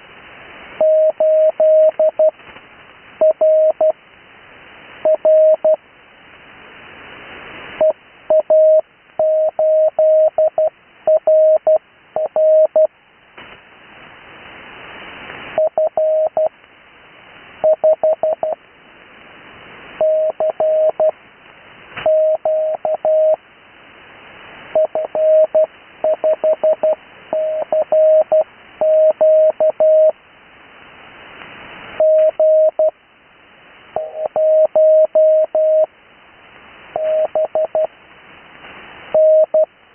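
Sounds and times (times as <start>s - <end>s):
background hiss: 0.0s - 39.9s
morse code tone: 0.8s - 2.3s, 3.2s - 3.9s, 20.0s - 21.1s, 22.1s - 23.4s, 24.8s - 30.1s, 34.0s - 35.9s, 37.0s - 37.9s, 39.2s - 39.7s.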